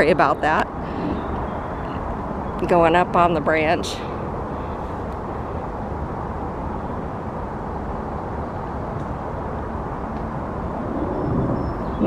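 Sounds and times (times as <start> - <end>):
outdoor background rumble: 0.0 - 12.0.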